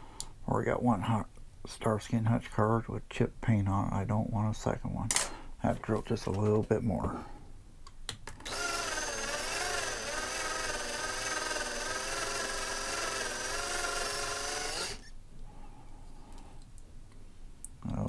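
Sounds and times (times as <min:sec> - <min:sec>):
electric drill whining: 0:08.4 - 0:15.2.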